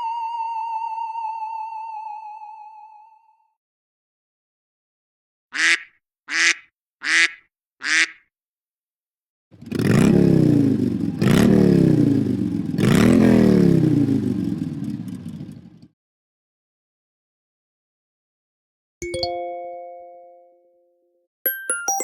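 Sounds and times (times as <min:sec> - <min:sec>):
duck quacks ringtone: 0:05.6 - 0:08.2
motorcycle engine revving: 0:09.6 - 0:15.9.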